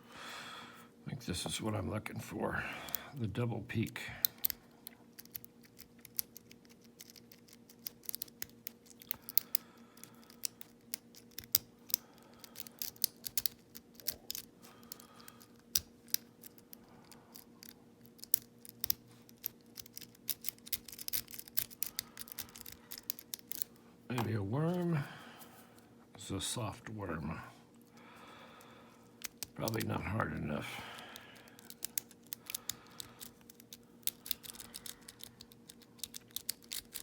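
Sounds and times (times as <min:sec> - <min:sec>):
faint steady hum: 0:00.0 - 0:37.0
lock pick clicking on pins: 0:04.2 - 0:23.7, 0:29.1 - 0:29.9, 0:31.4 - 0:37.0.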